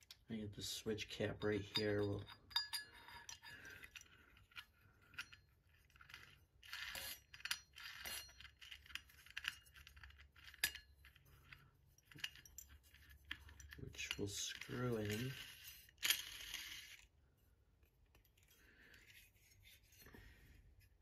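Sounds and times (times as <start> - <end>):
metal parts scraping: 1.8 - 17.1
small metal parts clicking: 1.8 - 17.1.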